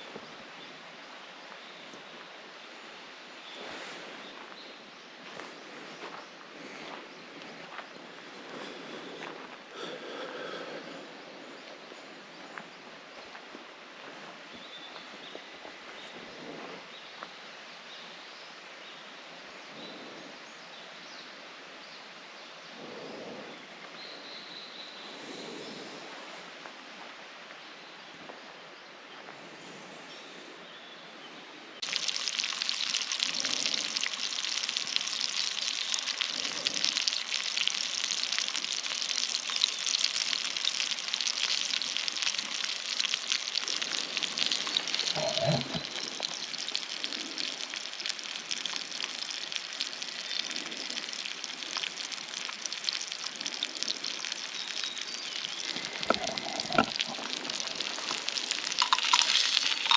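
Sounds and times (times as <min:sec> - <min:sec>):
quiet outdoor ambience: 0:00.0 - 0:59.9
food sizzling in a pan: 0:31.8 - 0:59.9.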